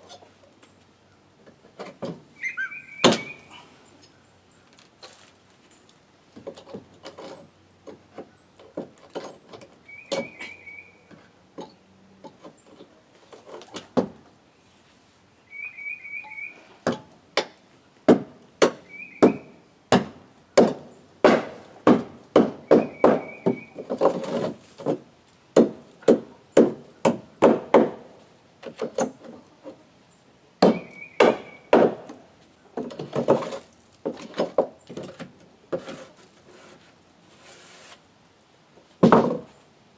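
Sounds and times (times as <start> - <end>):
hammer blows on wooden decking: 18.1 - 25.0.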